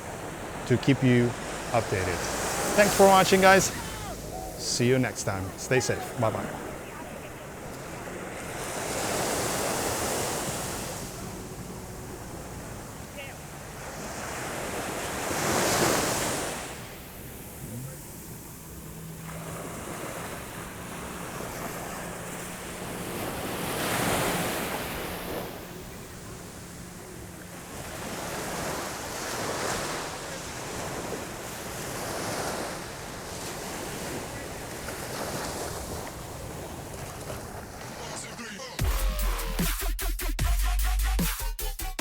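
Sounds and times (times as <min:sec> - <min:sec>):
sea waves washing onto beach: 0:00.0 - 0:38.8.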